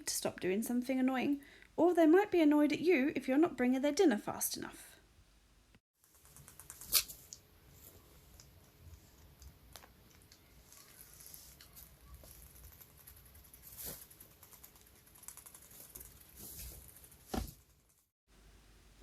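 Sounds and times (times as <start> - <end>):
guinea pig teeth chattering: 11.8 - 16.2.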